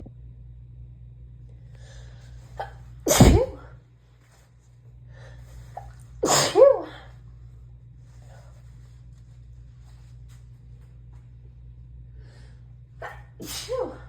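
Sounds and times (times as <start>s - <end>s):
low hum: 0.0s - 14.0s
woman sneezing: 2.6s - 3.7s, 5.8s - 7.1s, 13.0s - 14.0s.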